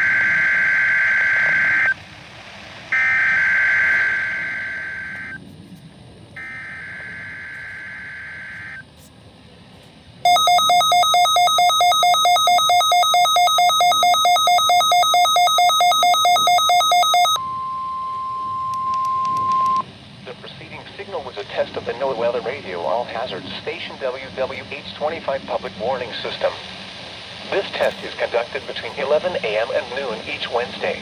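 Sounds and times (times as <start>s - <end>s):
rapidly pulsing alert beep: 10.3s - 17.4s
screeching digital data bursts: 10.3s - 17.4s.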